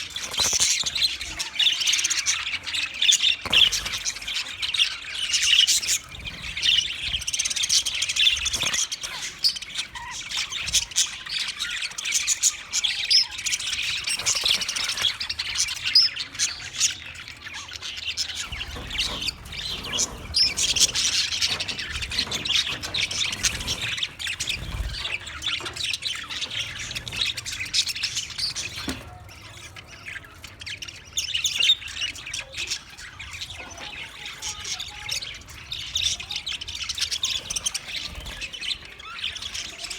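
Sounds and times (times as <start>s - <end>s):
budgie chirping: 18.2s - 31.5s.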